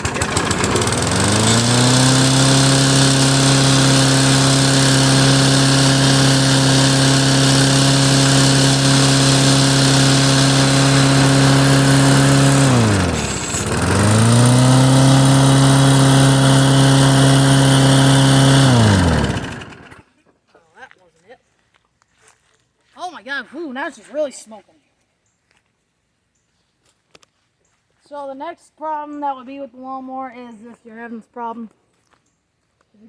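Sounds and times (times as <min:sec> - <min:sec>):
lawn mower engine running: 0:00.0 - 0:20.0.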